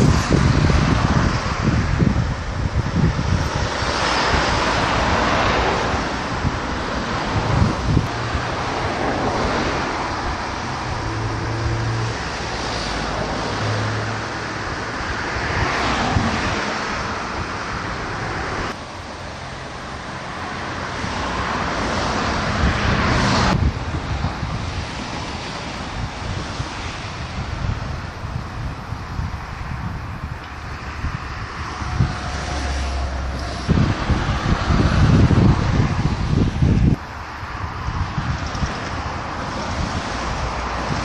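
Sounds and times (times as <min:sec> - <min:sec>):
car road and wind noise: 0:00.0 - 0:41.0
traffic passing by: 0:00.0 - 0:41.0.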